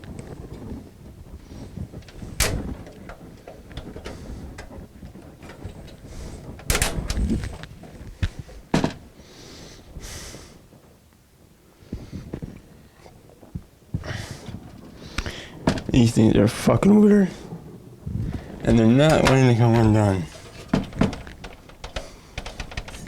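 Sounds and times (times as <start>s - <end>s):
loud knocks: 2.0s - 4.7s, 8.7s - 9.1s, 15.6s - 16.0s, 18.4s - 23.0s.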